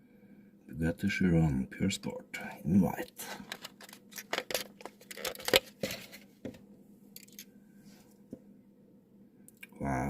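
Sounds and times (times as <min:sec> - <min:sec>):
packaging crinkling and clicking: 0:03.4 - 0:06.2.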